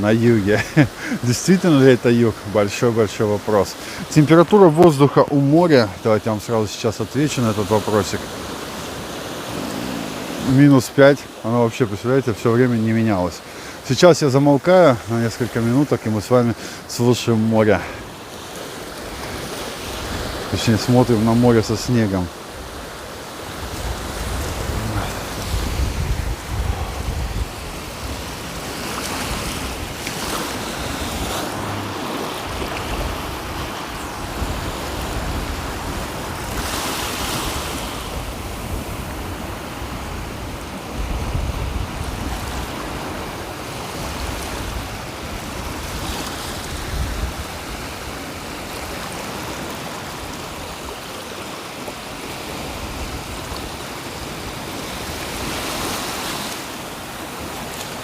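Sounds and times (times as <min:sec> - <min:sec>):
sea surf breaking: 0:00.0 - 0:58.0
wind gusting against microphone: 0:13.0 - 0:49.6.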